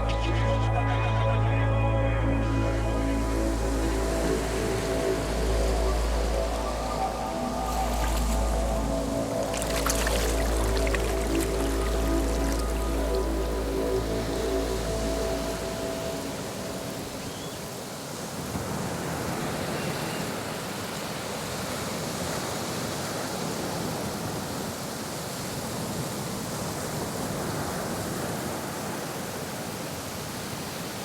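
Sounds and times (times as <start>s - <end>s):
held synth tones: 0.0s - 17.3s
steady rushing noise: 2.5s - 17.2s.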